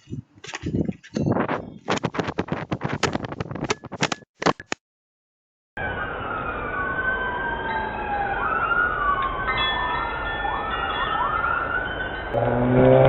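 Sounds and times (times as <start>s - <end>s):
emergency vehicle siren wailing: 5.8s - 13.0s.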